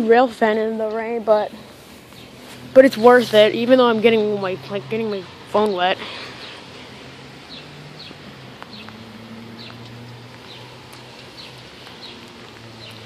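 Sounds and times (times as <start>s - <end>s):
steady rain hiss: 0.0s - 13.0s
small bird chirping: 5.6s - 13.0s.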